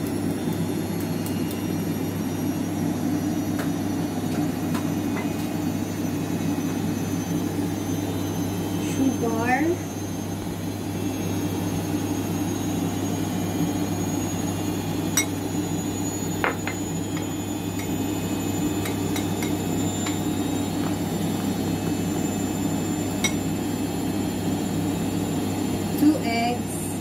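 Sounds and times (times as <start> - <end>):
steady low hum: 0.1 - 27.0
dishes and utensils clinking: 18.8 - 20.2.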